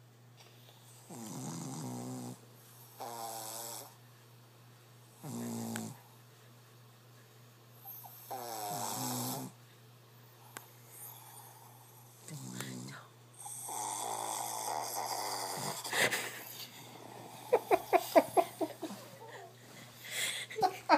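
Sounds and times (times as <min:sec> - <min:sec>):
dog snoring: 0:00.8 - 0:04.0, 0:05.1 - 0:06.1, 0:07.8 - 0:09.6, 0:10.9 - 0:18.5.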